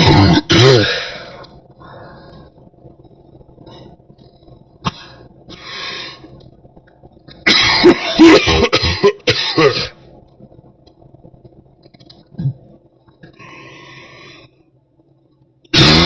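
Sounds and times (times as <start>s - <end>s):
person coughing deeply: 0.0s - 1.1s, 7.5s - 10.0s.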